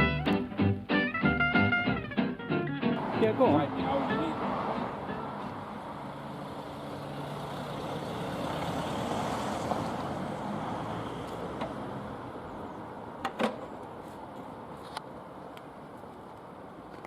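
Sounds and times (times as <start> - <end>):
vehicle engine passing by: 2.9 - 12.9.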